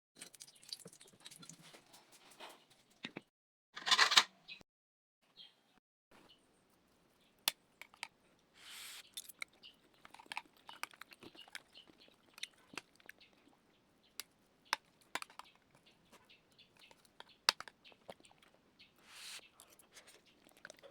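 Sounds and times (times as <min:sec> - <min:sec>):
person chewing and crunching: 0:09.0 - 0:18.6, 0:19.5 - 0:20.9.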